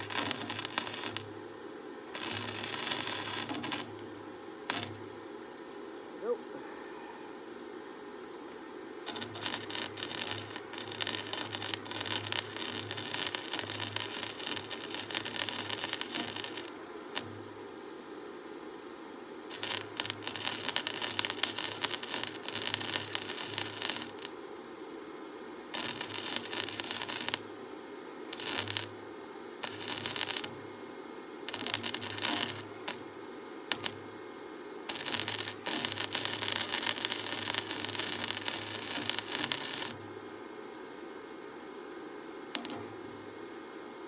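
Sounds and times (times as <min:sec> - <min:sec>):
welding arc crackling: 0:00.0 - 0:01.4, 0:02.1 - 0:05.1, 0:08.4 - 0:17.5, 0:19.5 - 0:24.4, 0:25.7 - 0:27.6, 0:28.3 - 0:30.7, 0:31.5 - 0:33.1, 0:33.7 - 0:34.1, 0:34.9 - 0:40.1, 0:42.5 - 0:42.8
welder humming: 0:00.0 - 0:05.2, 0:08.4 - 0:17.6, 0:19.5 - 0:24.4, 0:25.7 - 0:27.6, 0:28.2 - 0:30.8, 0:31.4 - 0:34.2, 0:34.8 - 0:40.2, 0:42.5 - 0:43.2.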